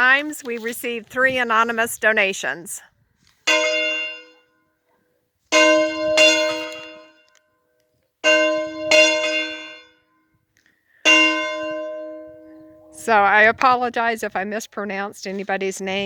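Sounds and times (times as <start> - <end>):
church bell ringing: 3.5 - 4.8, 5.4 - 7.6, 8.2 - 10.4, 11.0 - 13.0.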